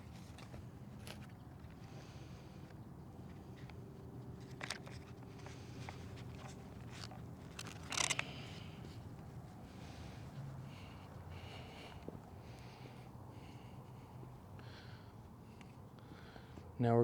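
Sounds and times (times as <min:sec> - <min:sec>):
low steady hum: 0:00.0 - 0:17.0
small parts clicking and knocking: 0:04.4 - 0:08.6
clatter of clicks: 0:04.5 - 0:08.5.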